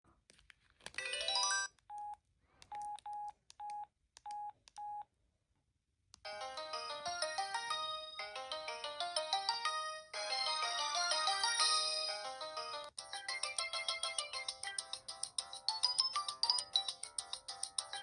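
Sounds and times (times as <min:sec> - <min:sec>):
polyphonic ringtone melody: 0:01.0 - 0:01.7.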